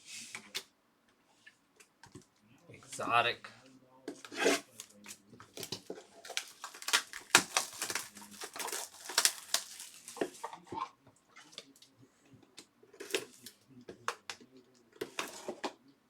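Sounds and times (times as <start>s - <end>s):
trading cards rustling and sliding: 4.2s - 10.6s.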